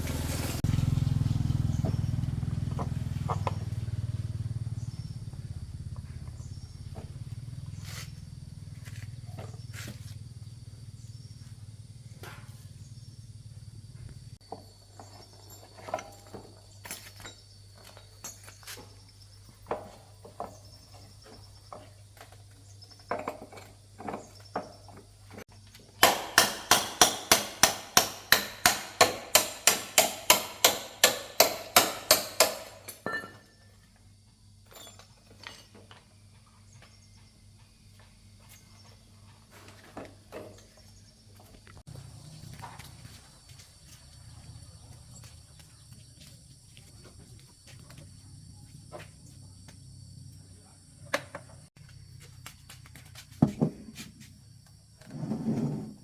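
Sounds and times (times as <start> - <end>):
tools tapping and knocking: 19.6 - 33.5
hammer blows: 26.0 - 33.3.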